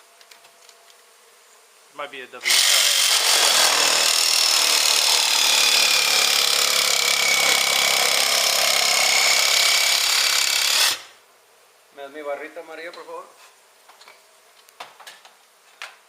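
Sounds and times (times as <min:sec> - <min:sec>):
power tool running: 0:02.4 - 0:11.2.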